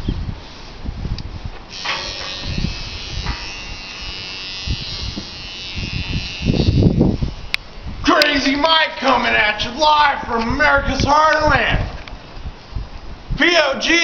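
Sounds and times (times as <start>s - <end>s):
electric clippers buzzing: 1.7s - 7.7s.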